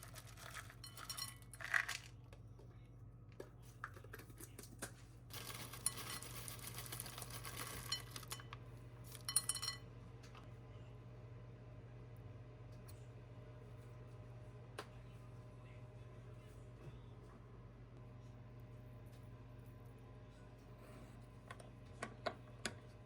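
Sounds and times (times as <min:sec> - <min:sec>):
dishes and cutlery clinking: 0:09.2 - 0:09.8.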